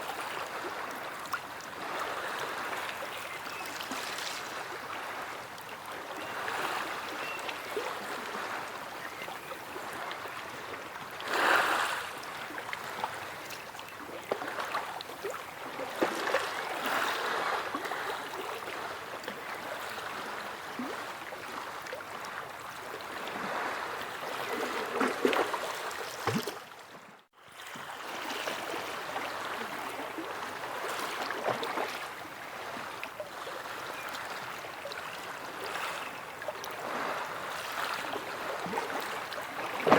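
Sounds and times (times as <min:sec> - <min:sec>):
sea waves washing and lapping: 0:00.0 - 0:26.8, 0:27.5 - 0:39.9.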